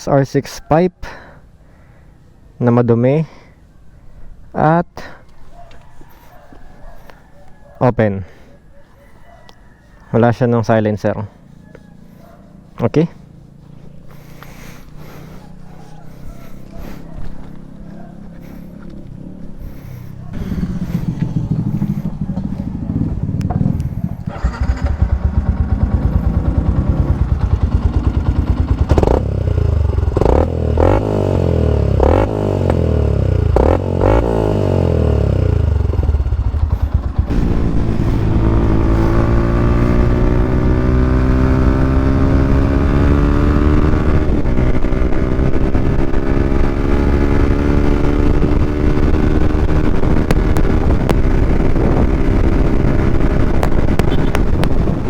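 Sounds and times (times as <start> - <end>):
motorcycle engine revving: 13.2 - 55.0.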